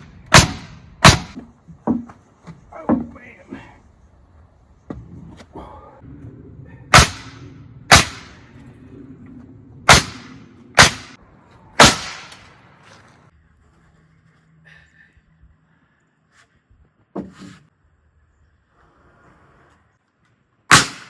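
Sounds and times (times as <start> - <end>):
hammer driving nails into wood: 0.3 - 2.1.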